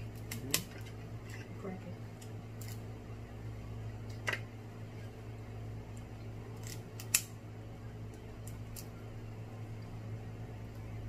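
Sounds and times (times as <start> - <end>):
crab shells cracking: 0.1 - 1.4, 6.5 - 7.4, 8.4 - 9.0.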